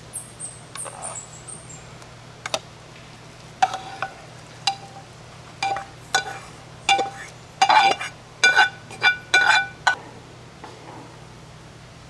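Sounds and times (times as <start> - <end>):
metal utensil knocking on cooking pot: 3.6 - 10.0.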